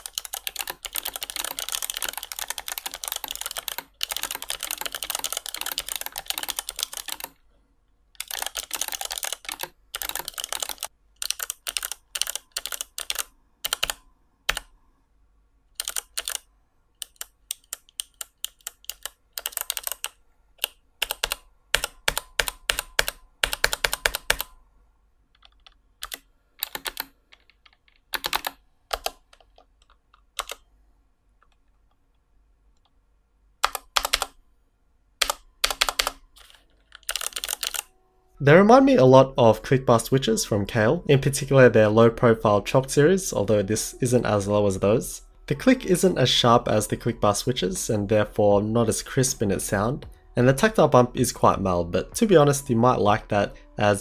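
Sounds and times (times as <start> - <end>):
mechanical keyboard typing: 0.0 - 7.4, 8.2 - 14.7, 15.8 - 24.6, 25.3 - 30.6, 33.6 - 34.4, 35.2 - 37.9.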